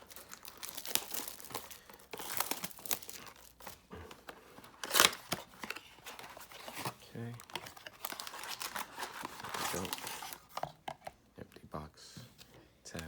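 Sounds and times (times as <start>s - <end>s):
packaging crinkling: 0.0s - 10.7s
cardboard box being torn open: 4.7s - 10.4s.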